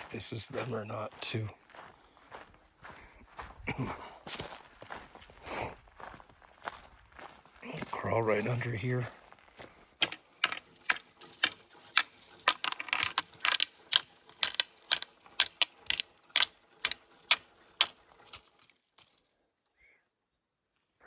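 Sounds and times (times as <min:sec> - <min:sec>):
clattering and rustling debris: 0:10.0 - 0:19.4.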